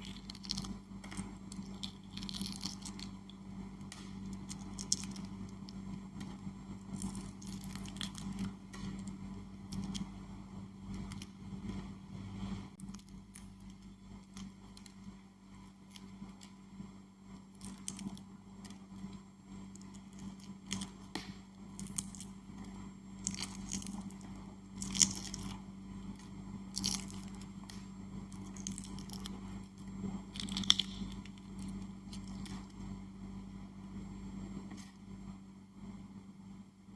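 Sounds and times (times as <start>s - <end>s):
eggshell crackling and tearing: 0.0s - 5.8s, 6.9s - 9.1s, 21.8s - 22.3s, 23.2s - 32.8s
eggshell snapping: 0.0s - 6.4s, 30.3s - 32.7s.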